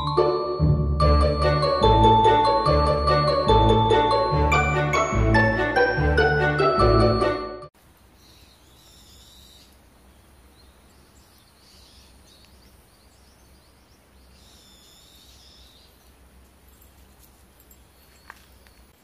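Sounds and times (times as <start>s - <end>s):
birds calling: 8.1s - 19.0s
bird chirps: 8.2s - 16.9s.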